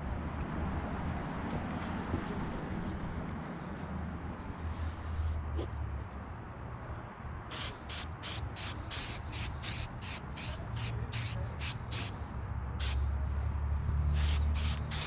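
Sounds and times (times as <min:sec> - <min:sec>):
spray can hissing: 0:07.5 - 0:12.1, 0:12.8 - 0:13.0, 0:14.2 - 0:15.0.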